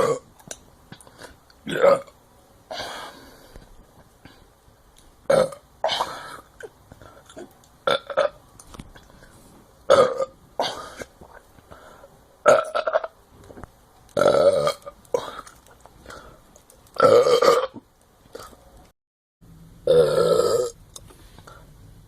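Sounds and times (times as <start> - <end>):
person burping: 0.0 - 0.3, 1.6 - 3.0, 5.3 - 8.4, 9.9 - 11.1, 12.4 - 13.2, 14.2 - 15.5, 17.0 - 17.8, 19.8 - 20.8.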